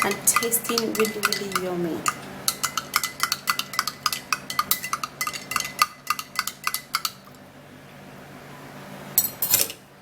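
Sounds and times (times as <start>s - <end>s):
spoon clinking in a cup: 0.0s - 7.2s.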